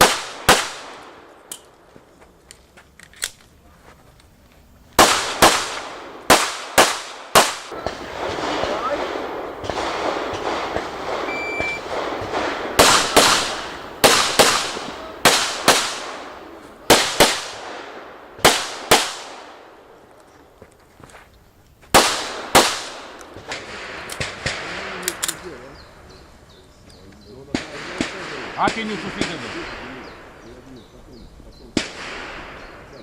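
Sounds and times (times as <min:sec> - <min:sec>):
pistol shots with echo: 0:00.0 - 0:01.3, 0:05.0 - 0:19.8, 0:22.0 - 0:25.4, 0:27.5 - 0:30.4, 0:31.7 - 0:32.8
short high beep: 0:11.3 - 0:11.8.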